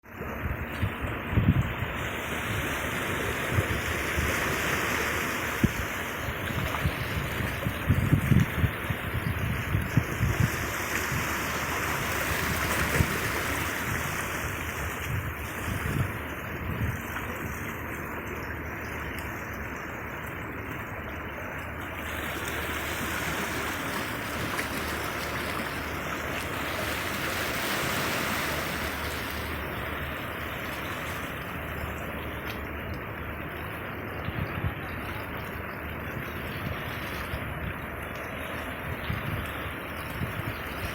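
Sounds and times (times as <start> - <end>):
sea waves washing in: 0.0 - 40.9
wind on microphone: 0.3 - 17.7, 34.1 - 38.0, 38.6 - 40.9.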